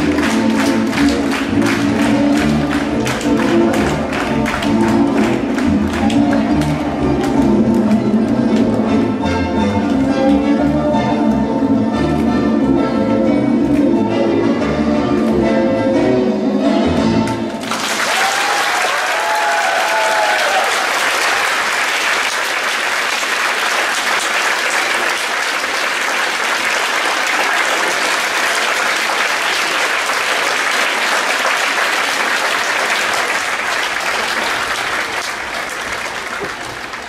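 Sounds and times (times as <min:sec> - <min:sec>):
audience applauding: 0:00.0 - 0:08.0, 0:17.5 - 0:37.0.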